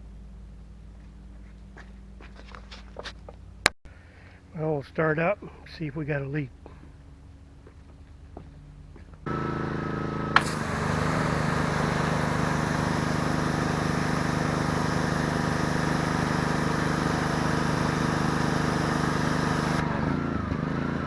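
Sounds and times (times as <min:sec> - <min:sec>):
pressure washer running: 0:09.3 - 0:20.5
water hissing from spray wand: 0:10.4 - 0:19.8.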